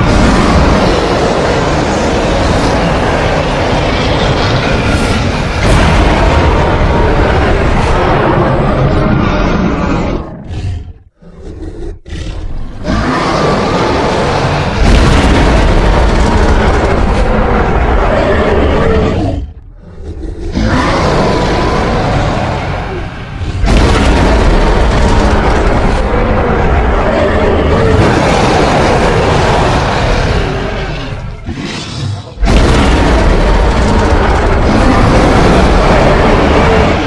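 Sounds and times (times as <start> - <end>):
dragon creature roaring: 0.0 - 37.0
deep low rumble: 32.4 - 37.0.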